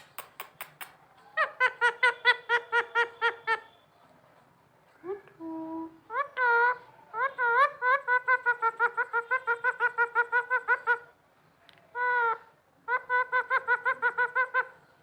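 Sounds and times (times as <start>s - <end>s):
parrot calling: 0.0s - 3.8s, 6.1s - 11.1s, 12.0s - 14.8s.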